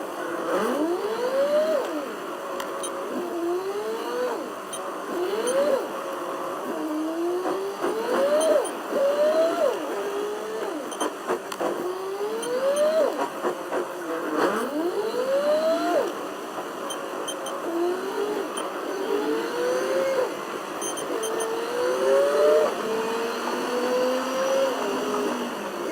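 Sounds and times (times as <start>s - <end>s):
car engine accelerating through gears: 17.3s - 25.9s.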